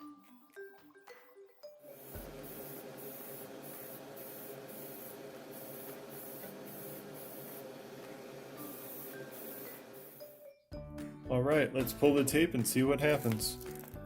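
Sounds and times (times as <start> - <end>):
airbrush spraying hiss: 1.9 - 10.4.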